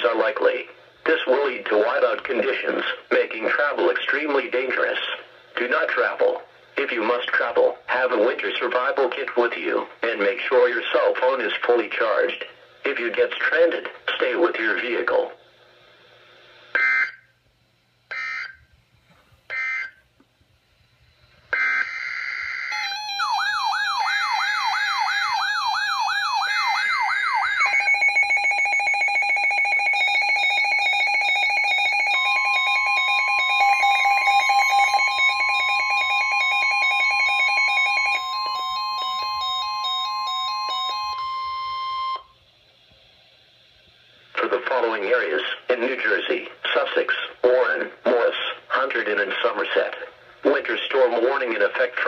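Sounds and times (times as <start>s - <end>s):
steady warning tone: 16.6s - 17.4s, 18.0s - 18.8s, 19.5s - 52.0s
warbling electronic alarm: 16.7s - 17.3s, 18.1s - 18.7s, 19.5s - 20.1s, 21.5s - 42.4s
rapid pulsed electronic alarm: 16.7s - 17.4s, 18.1s - 18.7s, 19.5s - 20.1s, 21.4s - 42.5s.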